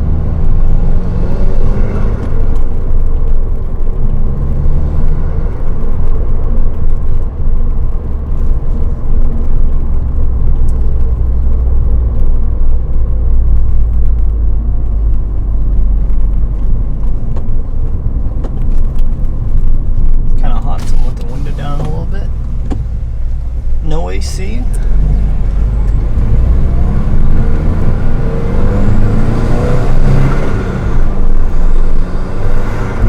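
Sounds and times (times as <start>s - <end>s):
engine revving: 0.0s - 3.2s, 3.8s - 6.5s, 20.4s - 33.0s
car engine exhaust rumble: 0.0s - 33.0s.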